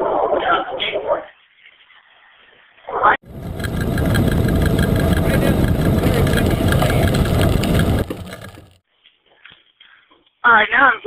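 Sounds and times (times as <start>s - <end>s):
wind and rolling bicycle wheels: 1.4s - 8.8s
fast even ticking: 3.2s - 8.8s.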